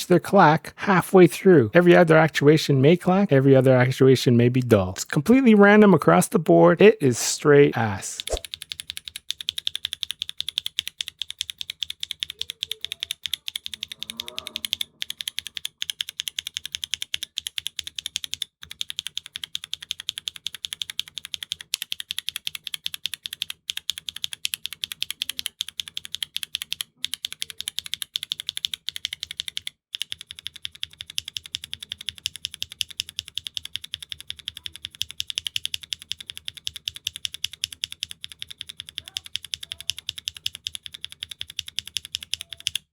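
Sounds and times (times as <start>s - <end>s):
high-pitched keyboard clacks: 38.9s - 40.7s.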